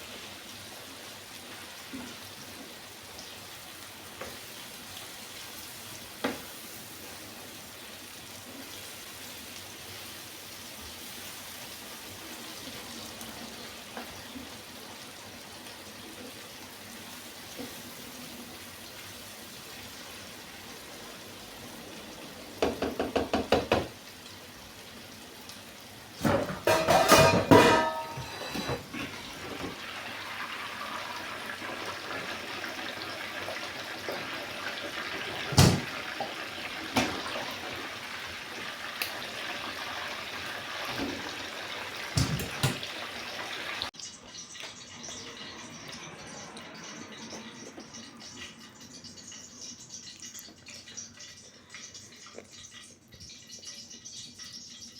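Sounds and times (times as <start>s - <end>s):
metal cookware clattering: 26.2s - 29.7s, 35.4s - 35.9s, 42.2s - 42.9s.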